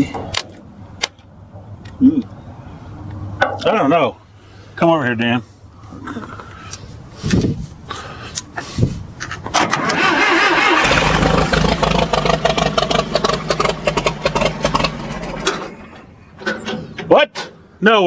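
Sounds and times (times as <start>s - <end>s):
starter motor cranking: 9.6s - 16.1s
engine running rough: 9.6s - 16.4s.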